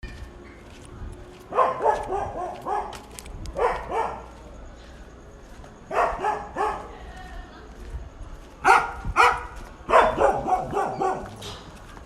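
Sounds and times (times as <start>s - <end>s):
low street rumble: 0.0s - 12.0s
dog barking: 1.5s - 3.0s, 3.6s - 4.2s, 5.9s - 6.9s, 8.6s - 11.4s.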